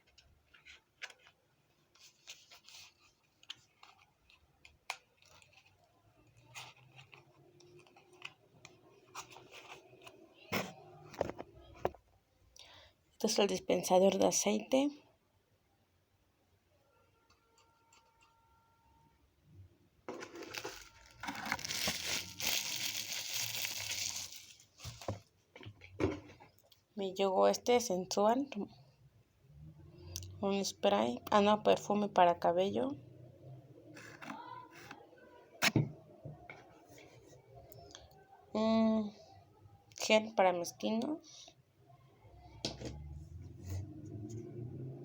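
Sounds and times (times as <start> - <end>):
packaging clicks and rustles: 20.1 - 25.2.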